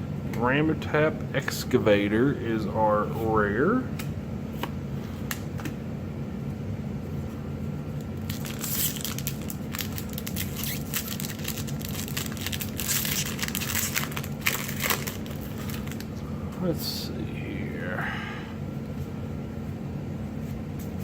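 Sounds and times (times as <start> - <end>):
low room hum: 0.0 - 21.0
cards rustling and snapping: 8.1 - 16.2
foil wrapper crinkling and tearing: 8.1 - 16.2.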